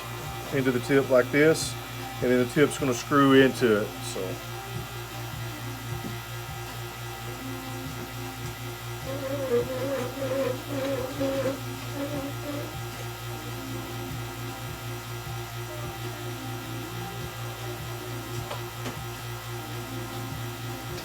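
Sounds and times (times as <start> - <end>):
low electrical hum: 0.0 - 21.0
wavering voice-like tone: 9.0 - 13.0.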